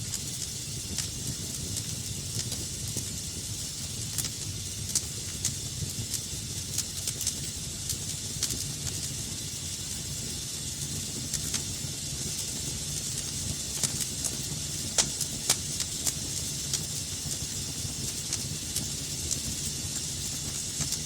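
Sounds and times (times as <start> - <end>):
fire crackles and pops: 0.0 - 21.0
fire hissing and rumbling: 0.0 - 21.0.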